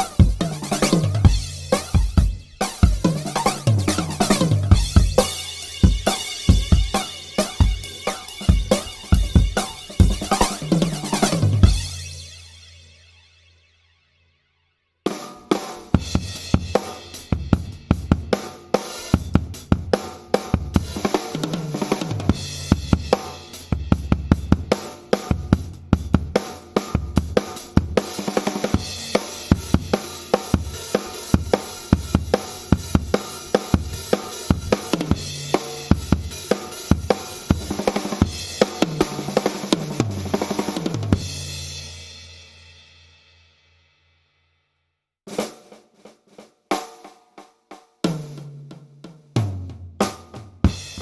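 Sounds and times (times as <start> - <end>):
snare drum: 0.0 - 12.1, 15.1 - 23.6, 24.4 - 41.8, 45.3 - 51.0
cymbals: 0.0 - 13.1, 28.1 - 42.7.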